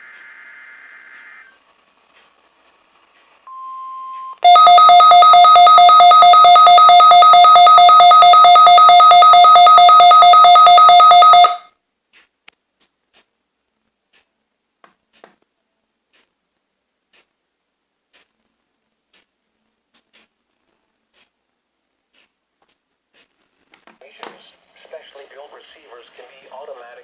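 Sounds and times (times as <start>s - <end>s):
pulsing alarm tone: 4.4s - 11.6s.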